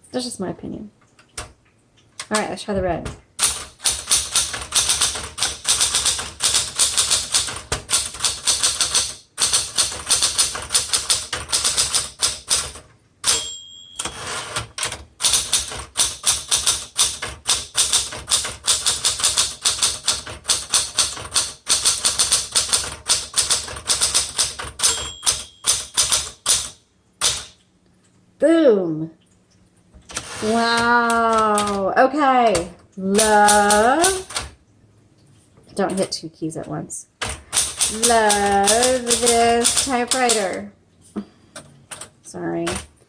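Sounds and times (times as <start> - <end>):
typewriter keys clattering: 3.0 - 13.4, 14.0 - 27.6, 32.5 - 34.6, 37.2 - 40.7, 41.6 - 42.9
typewriter margin bell: 3.4 - 27.6, 37.6 - 40.6.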